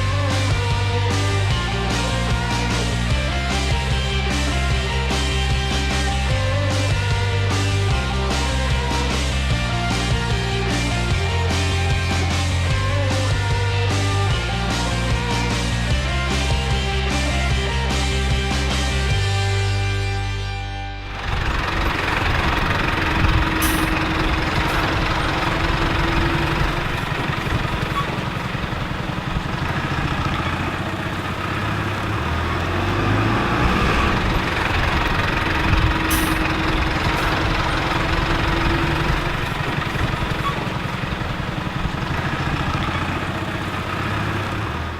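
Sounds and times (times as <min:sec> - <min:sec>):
engine idling: 0:00.0 - 0:20.4, 0:21.0 - 0:44.9.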